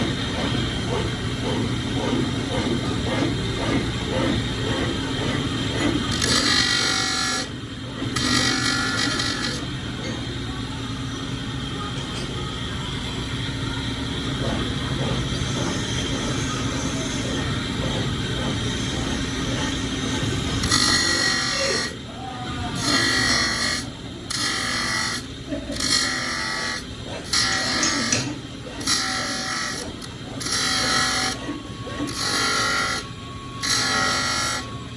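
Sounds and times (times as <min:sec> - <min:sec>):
grinding machine whining: 0:00.0 - 0:34.9
metal grinding on abrasive: 0:22.8 - 0:31.4.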